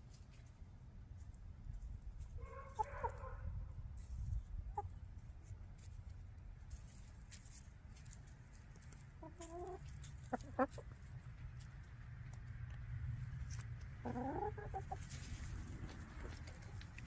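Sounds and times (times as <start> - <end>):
hens clucking: 4.6 - 5.0, 8.8 - 12.8, 13.5 - 17.0.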